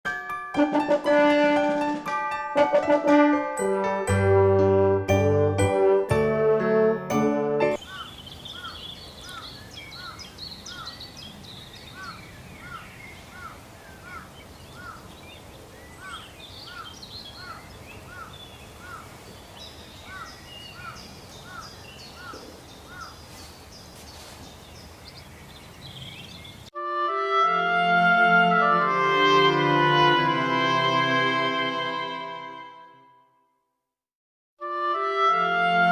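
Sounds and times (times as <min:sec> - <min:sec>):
birds chirping: 0:07.7 - 0:26.7.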